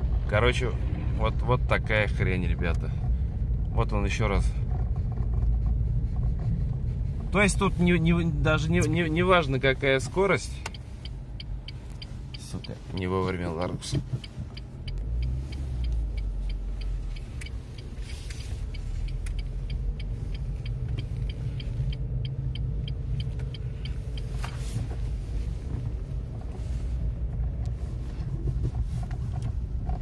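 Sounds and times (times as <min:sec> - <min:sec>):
road and engine rumble: 0:00.0 - 0:30.0
light ticking: 0:08.8 - 0:25.1.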